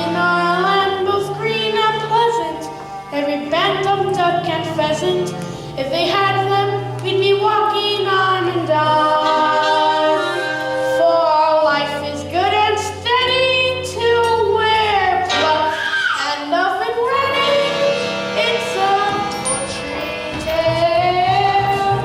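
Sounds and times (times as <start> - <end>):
musical accompaniment: 0.0 - 22.0
children singing: 7.4 - 12.5, 13.2 - 22.0.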